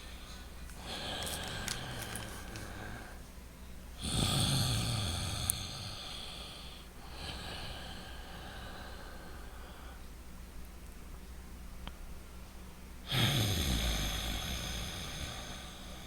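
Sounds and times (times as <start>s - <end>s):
person breathing through the nose: 0.0s - 3.2s.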